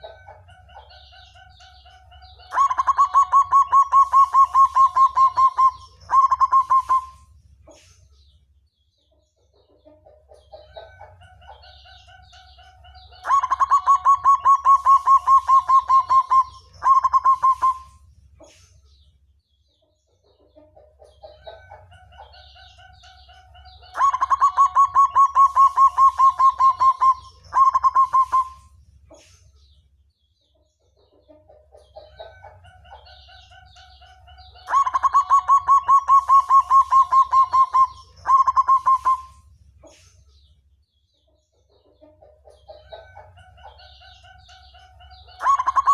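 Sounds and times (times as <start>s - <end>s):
dove cooing: 2.5s - 7.3s, 13.2s - 18.0s, 23.9s - 28.7s, 34.6s - 39.4s, 45.4s - 45.9s.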